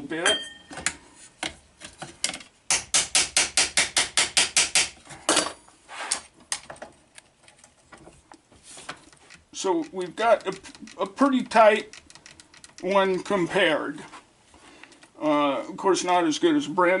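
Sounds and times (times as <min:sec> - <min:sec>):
hammer peening a rivet: 0:02.7 - 0:05.0.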